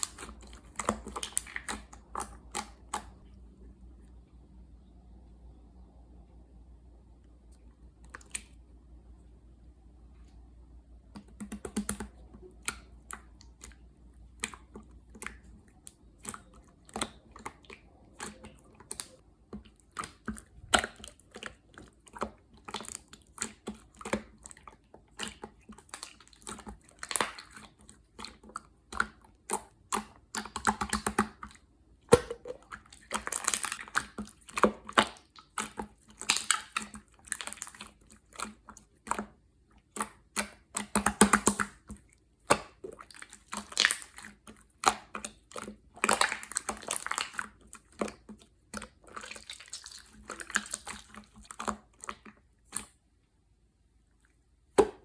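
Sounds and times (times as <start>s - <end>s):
slime squishing: 0.0s - 3.4s, 7.4s - 9.1s, 10.1s - 55.0s
slime clicking and popping: 33.1s - 48.2s.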